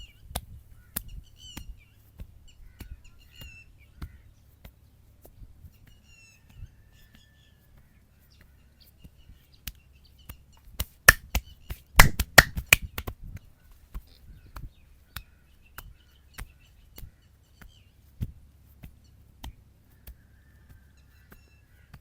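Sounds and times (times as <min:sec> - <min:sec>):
sharp slaps and snaps: 0:10.8 - 0:13.1.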